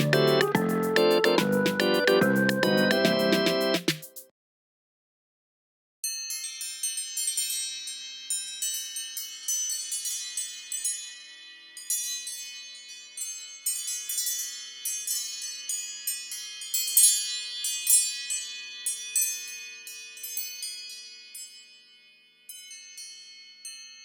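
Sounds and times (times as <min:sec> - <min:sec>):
chiming bell ringtone: 0:06.0 - 0:24.0.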